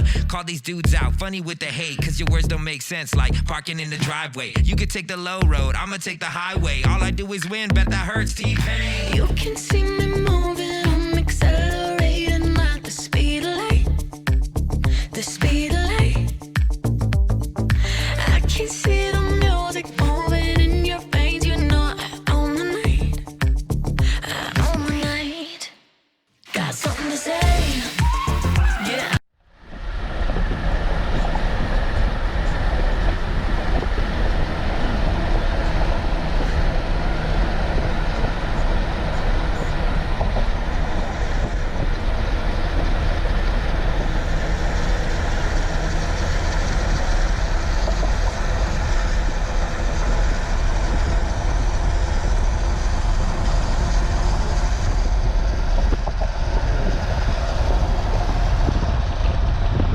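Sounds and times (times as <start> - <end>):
car road noise rumble: 29.8 - 59.9.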